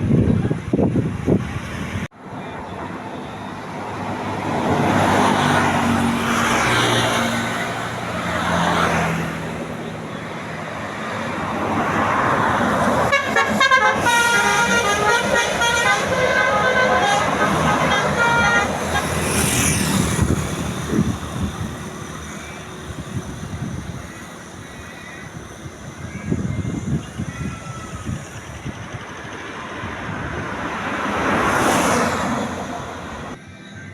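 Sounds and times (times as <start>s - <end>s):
bus engine and road noise: 0.0s - 33.9s
musical bus horn tune: 13.0s - 19.4s.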